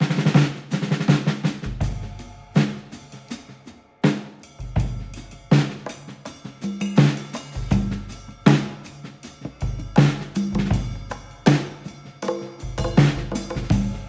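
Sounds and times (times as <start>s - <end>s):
drum kit beat: 0.0s - 14.0s
bass: 1.6s - 3.1s, 7.6s - 8.9s, 9.6s - 11.9s, 12.6s - 14.0s.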